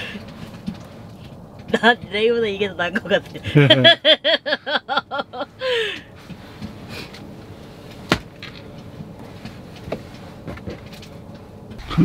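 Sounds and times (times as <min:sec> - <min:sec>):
low steady background noise: 0:00.0 - 0:12.0
short falling vocal sound: 0:11.8 - 0:12.0.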